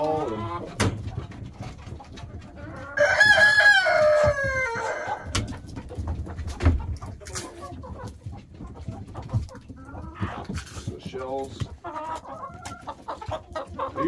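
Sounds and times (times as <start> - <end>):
hens clucking: 0.0 - 14.0
rooster crowing: 3.0 - 5.3.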